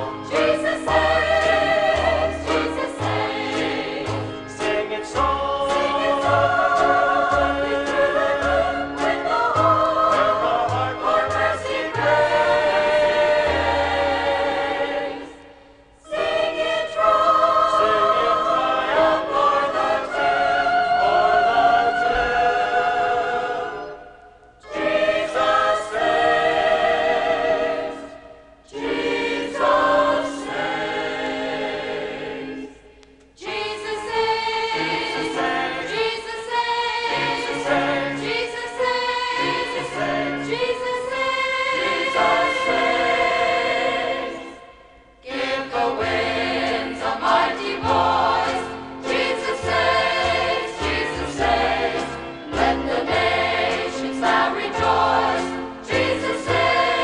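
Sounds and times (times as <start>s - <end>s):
choir singing: 0.0s - 57.0s
instrumental accompaniment: 37.0s - 57.0s.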